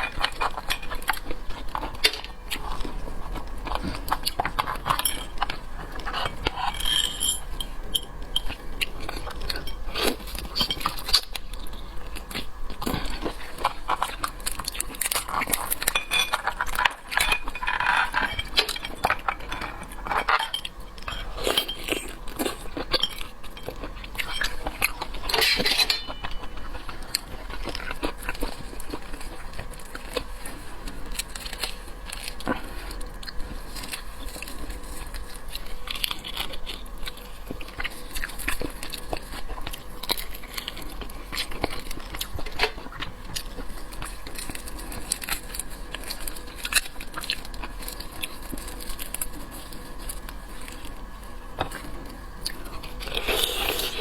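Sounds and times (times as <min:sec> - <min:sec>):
biting and chewing: 0:00.0 - 0:54.0
utensils clinking on dishes: 0:04.5 - 0:11.3, 0:14.6 - 0:27.8.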